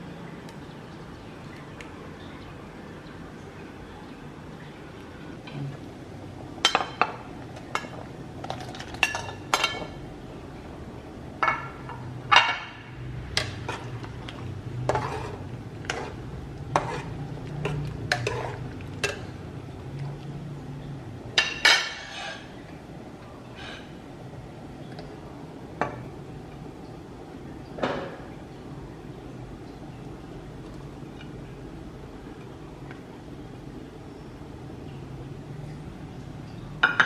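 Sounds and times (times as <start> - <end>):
low steady hum: 0.0 - 37.0
utensils clinking against dishes: 7.8 - 10.0.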